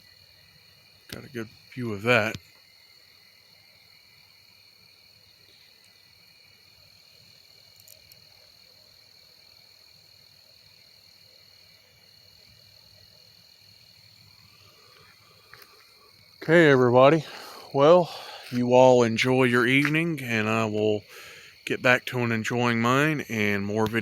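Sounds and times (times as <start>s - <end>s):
crickets chirping: 0.0s - 24.0s
frogs trilling: 14.0s - 24.0s.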